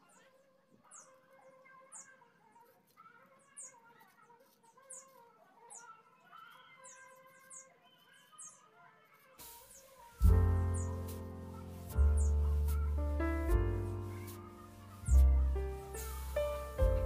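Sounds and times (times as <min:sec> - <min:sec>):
hiss: 0:09.4 - 0:17.0
short high bird chirps: 0:09.6 - 0:17.0.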